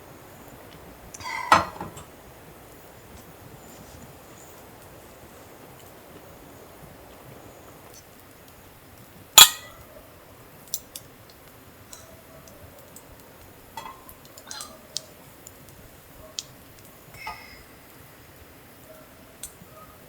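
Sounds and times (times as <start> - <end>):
dishes clinking: 1.2 - 2.2, 9.4 - 9.9, 13.8 - 14.8, 17.2 - 17.6.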